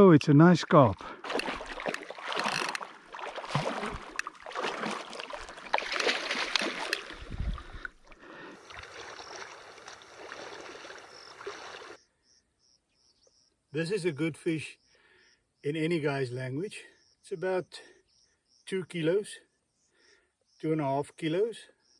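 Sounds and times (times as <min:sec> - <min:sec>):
water splashing and sloshing: 0:00.7 - 0:12.0.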